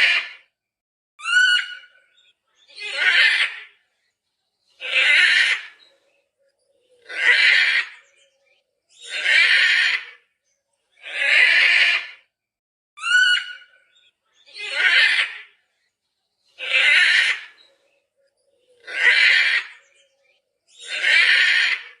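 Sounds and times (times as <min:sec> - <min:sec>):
macaw squawking: 0:01.2 - 0:01.9, 0:02.7 - 0:03.8, 0:04.8 - 0:05.8, 0:07.0 - 0:08.1, 0:13.0 - 0:13.7, 0:14.5 - 0:15.5, 0:16.6 - 0:17.6, 0:18.7 - 0:19.9, 0:20.7 - 0:22.0.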